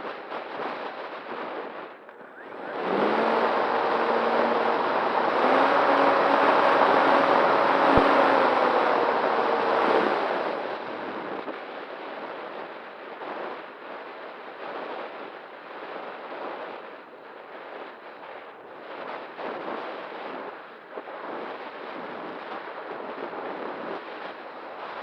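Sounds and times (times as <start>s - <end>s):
electric motor whine: 2.1s - 11.3s
wind rushing over microphone: 2.2s - 12.4s.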